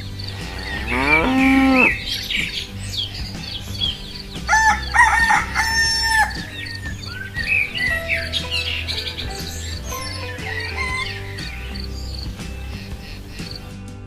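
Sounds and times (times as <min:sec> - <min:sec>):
small birds chirping: 0:00.0 - 0:13.9
low musical beat: 0:00.0 - 0:14.0
rooster crowing: 0:04.5 - 0:06.6.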